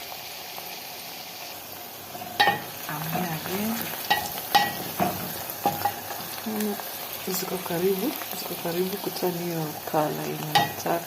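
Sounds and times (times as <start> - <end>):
vegetables sizzling in oil: 0.0 - 11.0
utensil clanking on pot: 2.2 - 6.2, 10.5 - 10.9.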